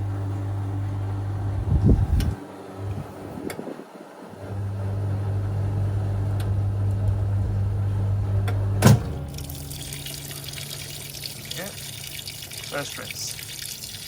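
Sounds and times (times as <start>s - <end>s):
washing machine motor humming: 0.0s - 14.0s
loud clunk: 8.8s - 9.3s
water hissing into tub: 9.3s - 14.0s.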